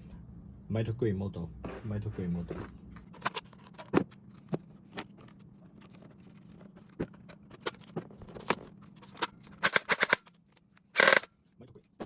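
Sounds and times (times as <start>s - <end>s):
toy blaster parts clicking: 9.2s - 11.3s.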